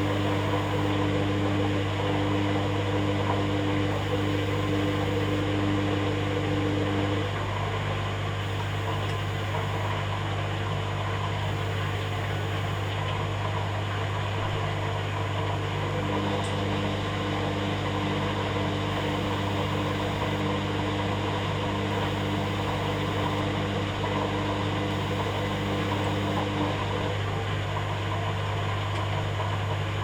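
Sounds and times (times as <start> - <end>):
higher machine tone: 0.0 - 1.1, 3.9 - 5.6, 8.4 - 10.0, 11.4 - 13.0, 18.9 - 20.5, 21.8 - 23.6, 24.8 - 27.0
washing machine motor hum: 0.0 - 10.3, 11.0 - 30.0.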